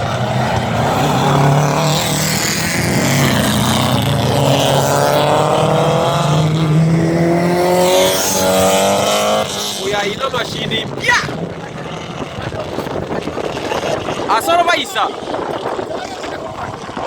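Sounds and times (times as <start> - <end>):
race car engines running hard: 0.0 - 17.0.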